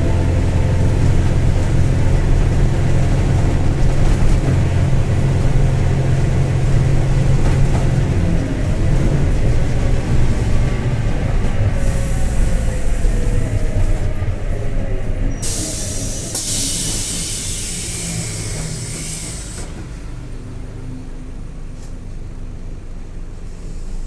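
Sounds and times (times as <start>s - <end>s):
bus drivetrain rumbling drone: 0.0s - 24.0s
air hissing: 15.4s - 19.8s.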